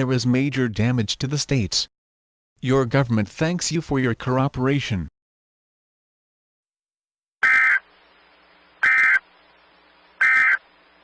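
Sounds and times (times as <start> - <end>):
buzzy data tone bursts: 8.5 - 11.0.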